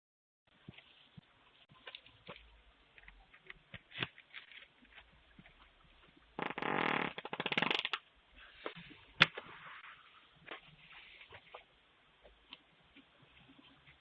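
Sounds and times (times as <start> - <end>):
person farting: 6.4 - 8.0.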